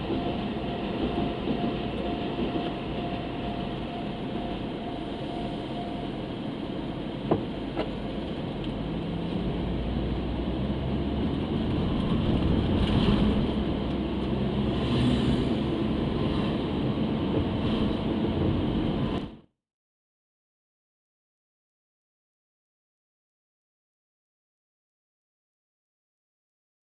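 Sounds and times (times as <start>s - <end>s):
car engine and tyres rumbling: 0.0s - 19.4s.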